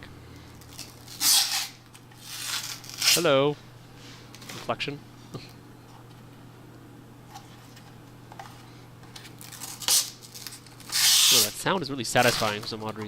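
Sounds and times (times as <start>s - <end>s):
plastic film peeling: 0.6s - 3.3s, 9.2s - 13.0s.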